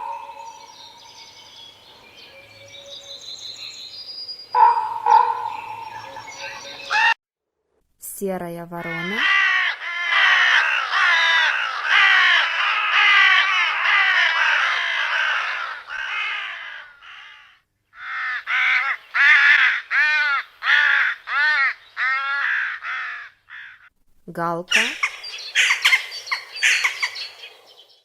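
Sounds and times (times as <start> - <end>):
crows cawing: 4.6 - 7.2, 8.9 - 23.9, 25.0 - 27.2.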